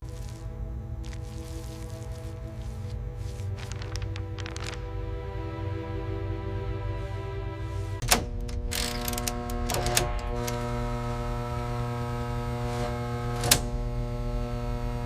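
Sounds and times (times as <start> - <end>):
electronic hum of held tones: 8.8 - 15.0.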